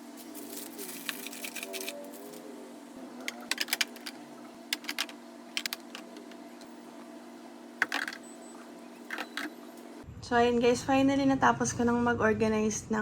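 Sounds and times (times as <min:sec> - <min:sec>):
refrigerator hum: 0:00.0 - 0:10.8
plastic containers clicking on shelves: 0:03.2 - 0:06.7, 0:07.8 - 0:08.2, 0:09.0 - 0:09.6.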